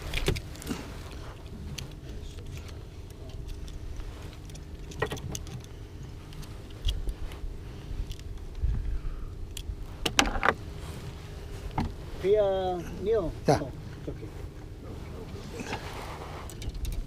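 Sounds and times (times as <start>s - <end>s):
fishing gear clicks and rattles: 0.0s - 8.6s, 16.4s - 17.0s.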